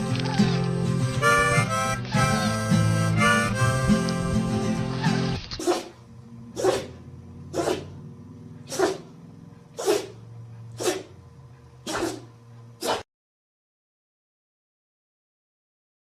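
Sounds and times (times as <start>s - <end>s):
faint low hum: 0.0s - 12.9s
animal sneezing: 5.0s - 8.0s, 8.6s - 9.1s, 9.7s - 11.2s, 11.8s - 13.0s.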